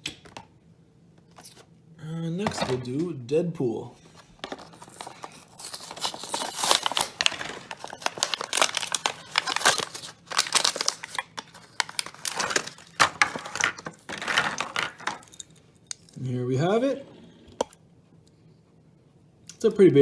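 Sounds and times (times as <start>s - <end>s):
plastic blister crinkling: 4.0s - 15.4s
cardboard tearing: 4.6s - 14.7s.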